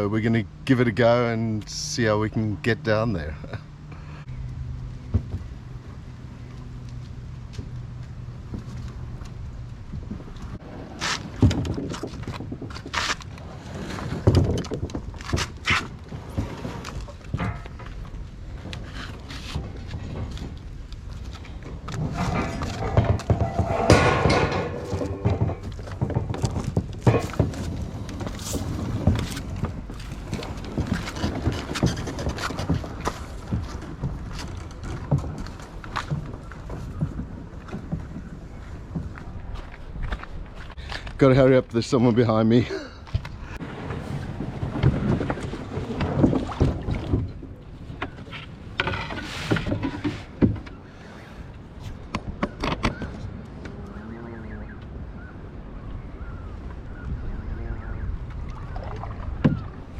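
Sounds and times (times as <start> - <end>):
canoe hull rumbling over rollers: 0.0 - 59.9
hull knocks and clunks: 5.0 - 5.8, 9.8 - 41.1, 43.1 - 51.2, 51.8 - 53.8, 56.2 - 59.9.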